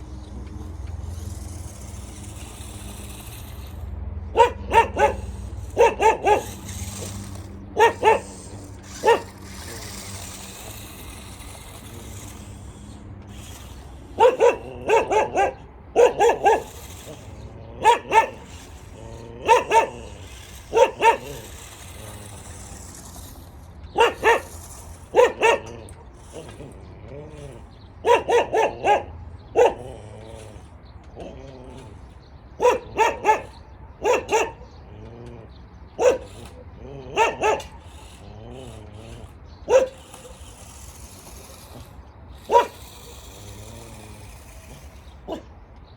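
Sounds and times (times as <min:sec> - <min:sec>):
dog barking: 0:04.3 - 0:10.6, 0:13.3 - 0:22.2, 0:23.9 - 0:26.6, 0:27.3 - 0:30.5, 0:32.6 - 0:34.8, 0:36.0 - 0:36.5, 0:37.1 - 0:38.8, 0:39.7 - 0:40.6, 0:42.4 - 0:43.2.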